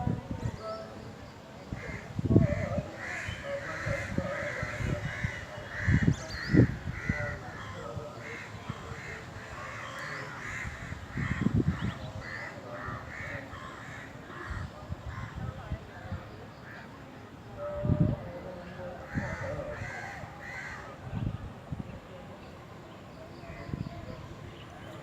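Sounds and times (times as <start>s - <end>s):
crows cawing: 1.8s - 15.4s, 19.1s - 20.9s.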